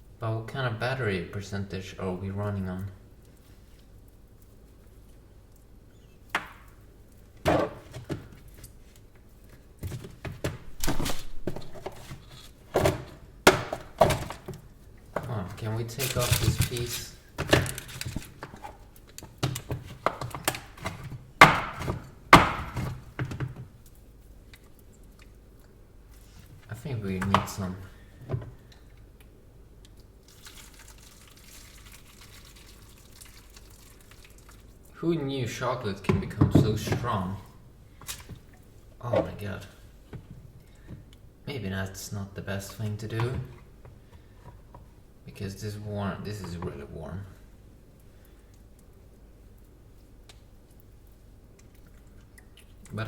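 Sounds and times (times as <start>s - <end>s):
faint trickle of running water: 1.3s - 7.4s, 29.8s - 35.7s
hard chocolate knocking and cracking: 6.3s - 6.8s, 9.8s - 23.7s.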